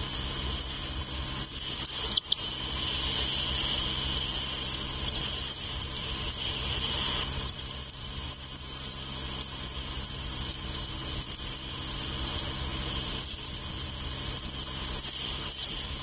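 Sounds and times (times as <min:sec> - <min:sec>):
insect chorus: 0:00.0 - 0:16.0
low hum: 0:00.0 - 0:16.0.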